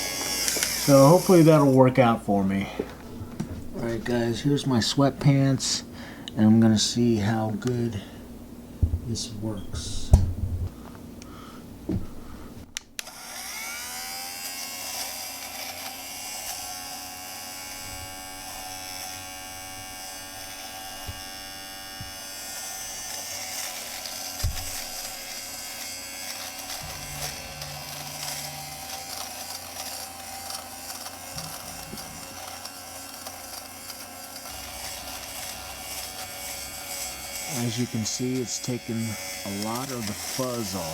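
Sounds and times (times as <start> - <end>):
lint remover motor whining: 0.0 - 1.9, 13.0 - 40.9.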